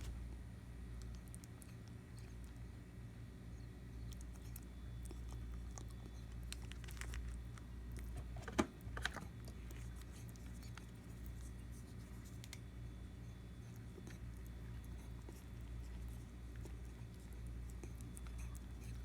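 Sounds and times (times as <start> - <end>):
steady low hum: 0.0 - 19.0
rabbit teeth chewing clicks: 4.0 - 12.7, 13.8 - 19.0.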